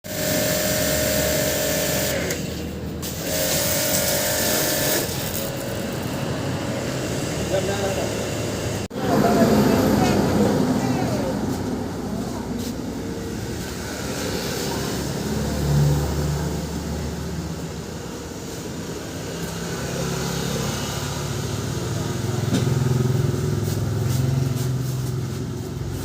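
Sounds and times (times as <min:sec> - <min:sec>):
pressure washer motor humming: 0:00.1 - 0:10.8.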